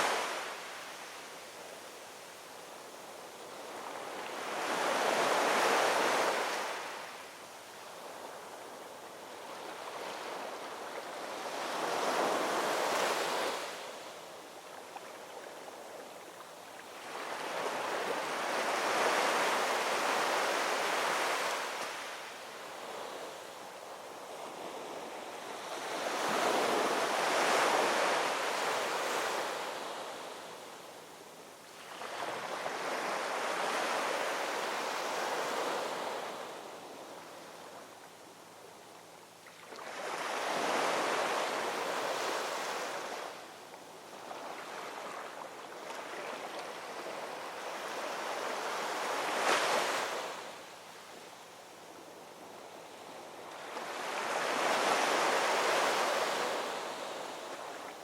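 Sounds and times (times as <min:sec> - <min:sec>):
ocean waves washing on shore: 0:00.0 - 0:58.0.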